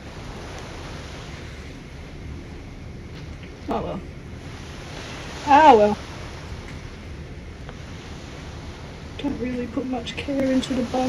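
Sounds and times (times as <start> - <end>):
low rumble: 0.0 - 11.0
steady background hiss: 0.0 - 11.0
faint ticks: 10.2 - 10.8.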